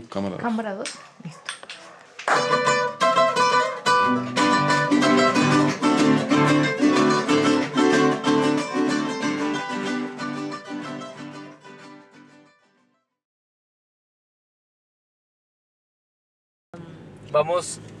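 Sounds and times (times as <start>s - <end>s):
strummed guitar music: 2.3s - 13.0s.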